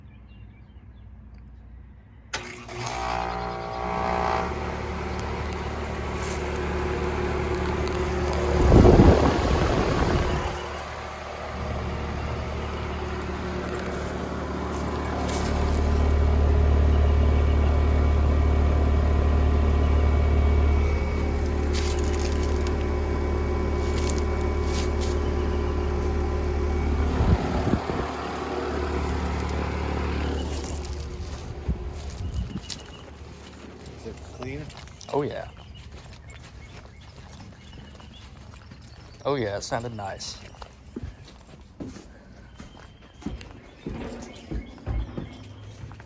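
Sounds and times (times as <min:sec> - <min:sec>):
air conditioner compressor hum: 0:02.4 - 0:34.7.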